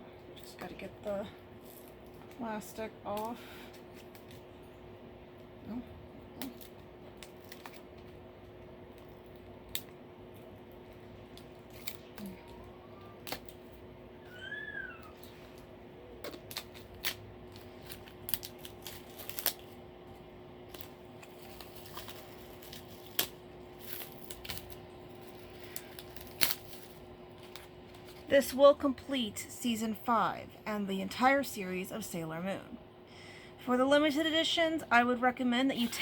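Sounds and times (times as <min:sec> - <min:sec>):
faint steady hum: 0:00.0 - 0:36.0
plastic wrap crinkling: 0:06.4 - 0:28.5.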